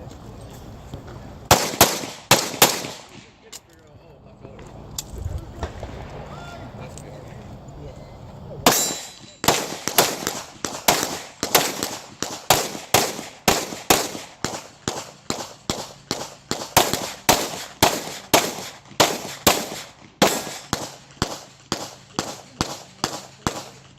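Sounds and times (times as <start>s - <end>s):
pistol shots in rapid strings: 1.5s - 3.4s, 8.7s - 23.9s.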